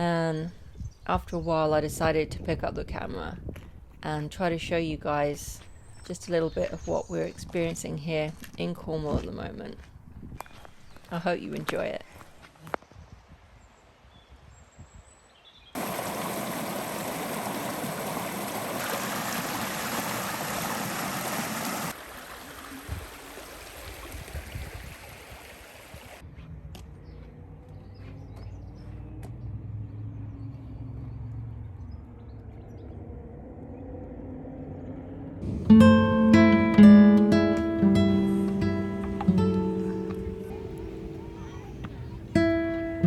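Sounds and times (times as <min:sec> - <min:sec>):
running water rushing: 0:15.8 - 0:26.2, 0:37.2 - 0:43.0.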